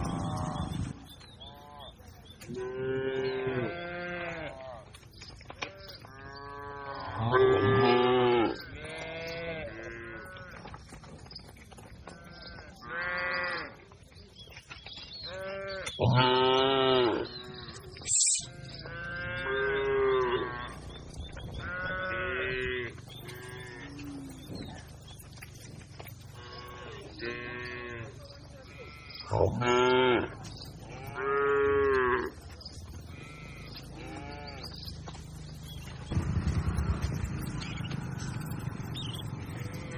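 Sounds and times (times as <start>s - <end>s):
cattle mooing: 0.0s - 1.0s, 2.5s - 4.6s, 5.6s - 10.6s, 15.3s - 24.9s, 26.3s - 34.9s, 36.5s - 39.9s.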